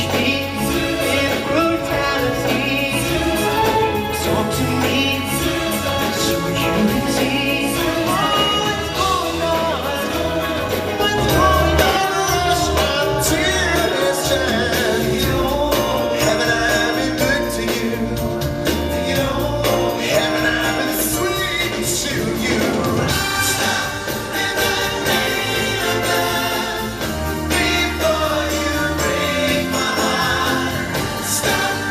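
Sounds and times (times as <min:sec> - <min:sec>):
band with bass and tambourine: 0:00.0 - 0:31.9
vocal group singing in harmony: 0:00.0 - 0:31.9.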